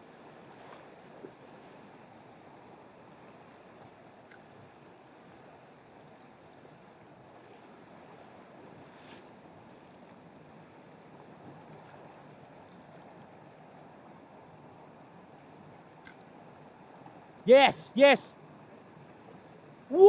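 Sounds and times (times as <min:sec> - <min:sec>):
faint click: 0:16.0 - 0:16.2
river water rushing: 0:16.8 - 0:18.8, 0:19.6 - 0:20.0.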